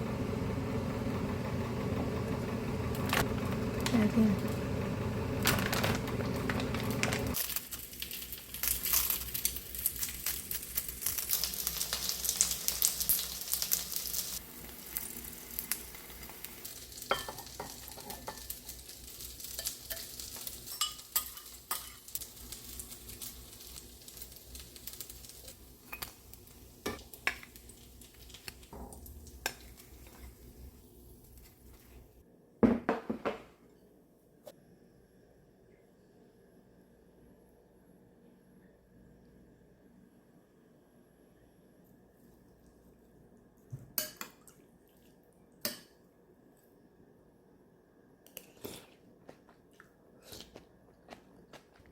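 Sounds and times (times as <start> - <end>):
food sizzling in frying pan: 4.6 - 32.2.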